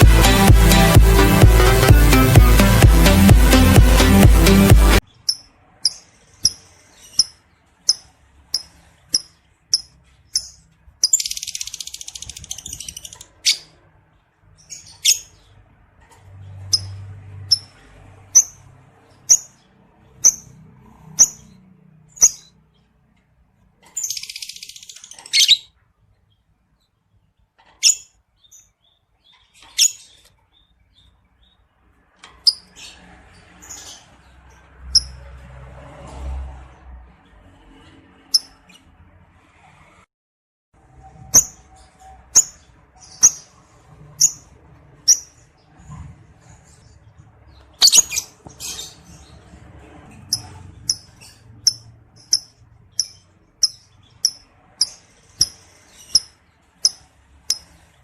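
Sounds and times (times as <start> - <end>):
electronic music: 0.0 - 5.0
lovebird chirping: 5.1 - 13.7, 18.4 - 18.6, 19.3 - 19.5, 20.2 - 20.4, 22.2 - 22.6, 23.9 - 25.7, 27.8 - 30.7, 41.3 - 41.6, 42.3 - 43.5, 44.2 - 44.4, 45.1 - 45.4, 47.8 - 49.0, 50.3 - 57.8
lovebird rattling chatter: 7.9 - 13.6, 50.3 - 57.7.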